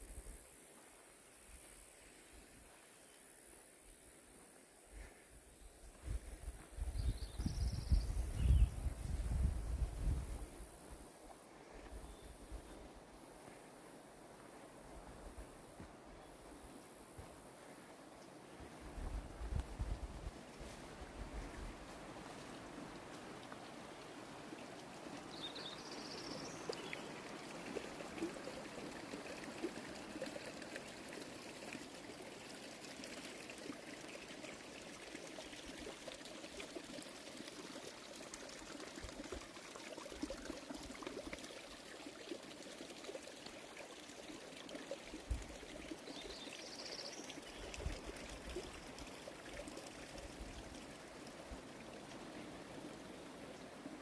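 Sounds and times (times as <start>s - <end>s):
stream babbling: 12.3s - 54.0s.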